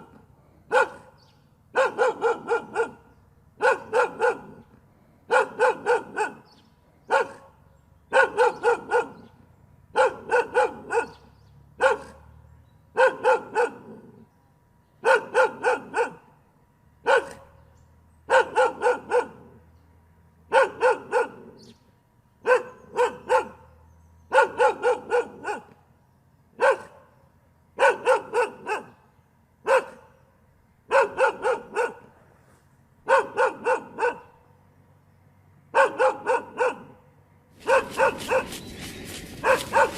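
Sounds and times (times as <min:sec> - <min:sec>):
dog barking: 0:00.0 - 0:04.7, 0:05.3 - 0:14.2, 0:15.0 - 0:16.3, 0:17.0 - 0:17.6, 0:18.3 - 0:19.6, 0:20.5 - 0:21.7, 0:22.4 - 0:25.8, 0:26.6 - 0:27.2, 0:27.8 - 0:30.2, 0:30.9 - 0:32.2, 0:33.0 - 0:34.4, 0:35.7 - 0:37.0, 0:37.6 - 0:39.9.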